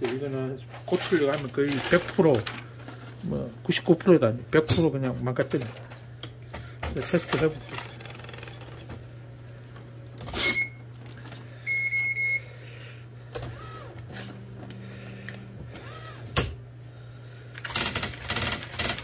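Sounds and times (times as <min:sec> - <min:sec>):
typewriter print strikes: 0:07.0 - 0:08.9, 0:17.6 - 0:19.0
typewriter humming: 0:07.0 - 0:09.0, 0:17.6 - 0:19.0
typewriter beeps: 0:07.1 - 0:08.8.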